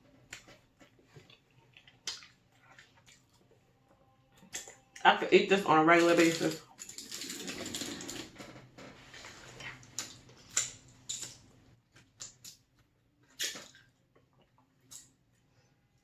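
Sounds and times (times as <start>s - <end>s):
wet chewing clicks: 0.3s - 3.4s.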